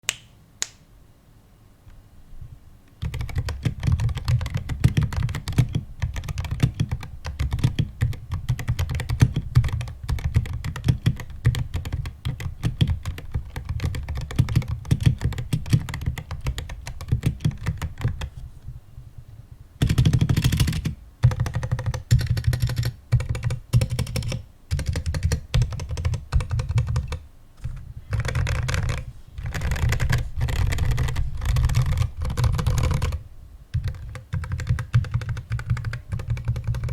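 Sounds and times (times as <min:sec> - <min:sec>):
mechanical keyboard typing: 0:03.0 - 0:18.3, 0:19.8 - 0:36.9.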